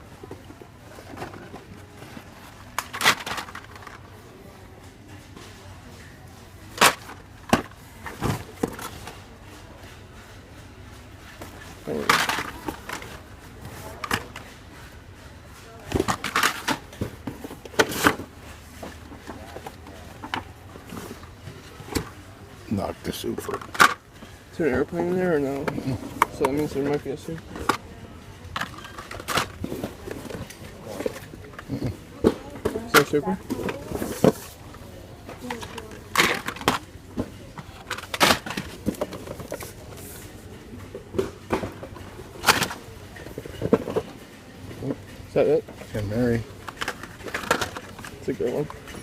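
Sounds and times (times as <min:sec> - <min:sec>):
plastic packs clacking and rustling: 0:00.0 - 0:49.0
packaging rustling and scraping: 0:28.5 - 0:44.3, 0:45.8 - 0:49.0.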